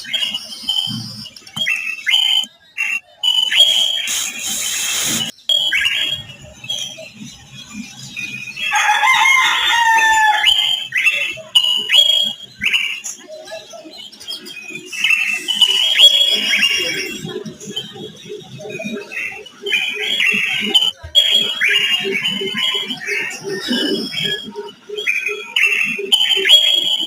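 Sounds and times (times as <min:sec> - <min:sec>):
birds chirping: 0:00.0 - 0:27.0.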